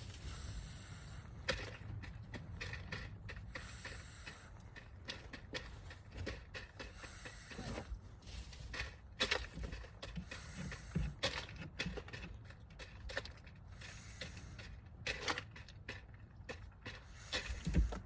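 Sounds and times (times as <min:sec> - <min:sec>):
chicken snoring: 0:07.0 - 0:08.0.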